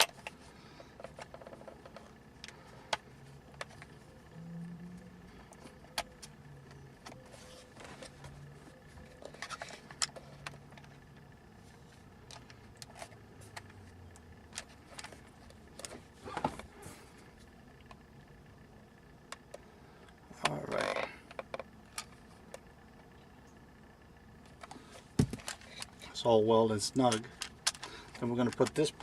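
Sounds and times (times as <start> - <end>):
faint low hum: 0.0 - 29.0
small plastic parts clicking: 26.9 - 29.0.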